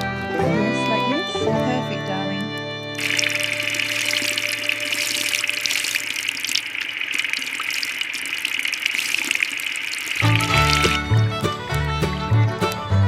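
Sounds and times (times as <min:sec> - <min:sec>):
music: 0:00.0 - 0:05.6, 0:10.2 - 0:13.0
small splashes and ticks: 0:00.0 - 0:13.0
water gushing: 0:02.9 - 0:11.3.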